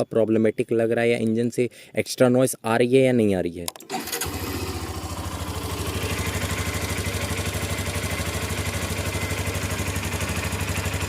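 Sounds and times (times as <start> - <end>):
motorcycle engine idling: 4.2 - 11.0.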